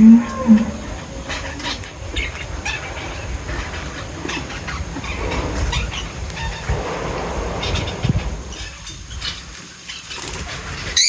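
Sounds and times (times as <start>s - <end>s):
low drawn-out call: 0.0s - 8.8s
steady low rumble: 0.0s - 9.6s
small birds chirping: 0.0s - 11.0s.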